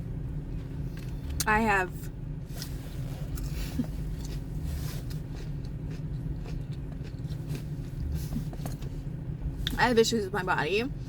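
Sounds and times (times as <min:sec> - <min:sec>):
car cabin engine hum: 0:00.0 - 0:11.0.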